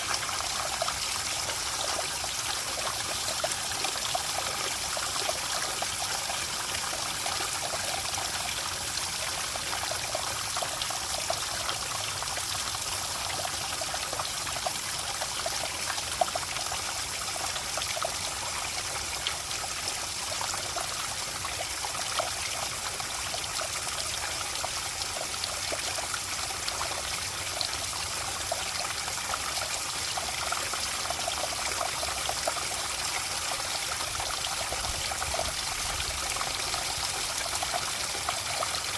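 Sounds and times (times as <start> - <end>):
water trickling and splashing: 0.0 - 38.9.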